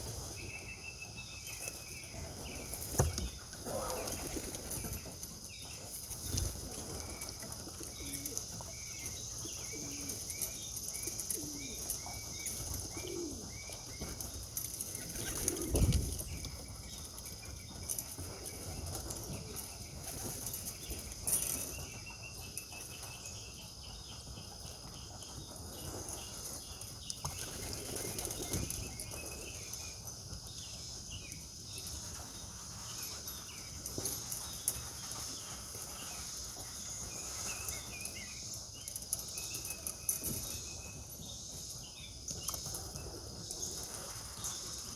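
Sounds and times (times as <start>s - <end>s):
pigeons cooing: 2.2s - 5.1s, 6.2s - 17.2s
pigeons flapping wings: 14.0s - 16.2s.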